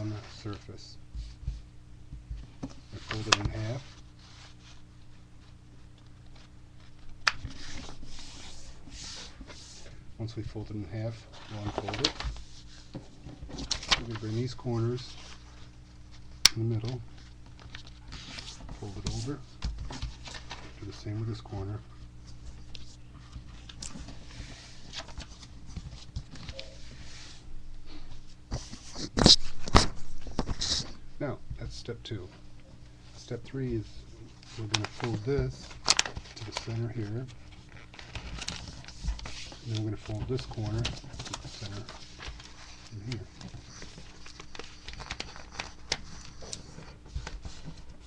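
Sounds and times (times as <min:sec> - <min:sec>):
paper rustling and sliding: 0:02.6 - 0:05.6, 0:06.2 - 0:10.0, 0:11.0 - 0:15.7, 0:34.4 - 0:48.0.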